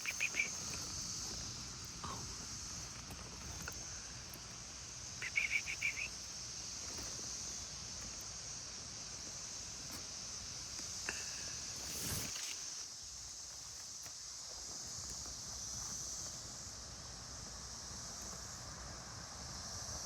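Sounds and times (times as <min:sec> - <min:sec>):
bird calling: 0:00.0 - 0:02.3, 0:05.2 - 0:06.3
high-pitched insect chorus: 0:00.0 - 0:20.0.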